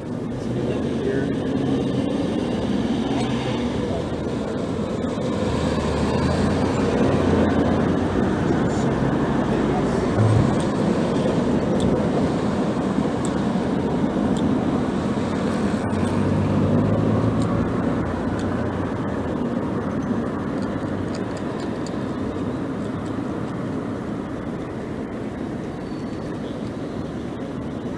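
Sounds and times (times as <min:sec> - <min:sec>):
road rumble: 0:00.0 - 0:27.9
wind noise: 0:07.0 - 0:16.7
low hum: 0:09.8 - 0:11.7.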